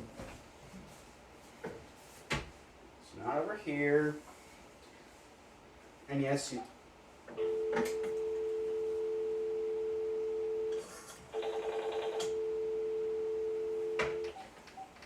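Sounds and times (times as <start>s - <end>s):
telephone dial tone: 7.4s - 14.4s.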